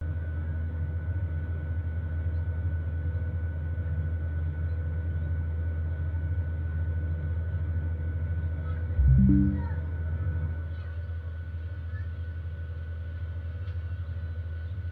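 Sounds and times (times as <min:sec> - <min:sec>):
airliner cabin drone: 0:09.0 - 0:10.0
thin high hum: 0:09.0 - 0:10.0.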